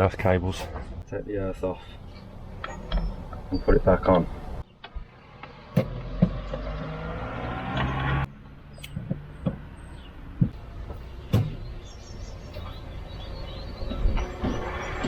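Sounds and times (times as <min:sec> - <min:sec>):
passing car engine hum: 0:02.0 - 0:15.0
sharp knocks and clicks: 0:08.8 - 0:09.7, 0:10.4 - 0:11.6.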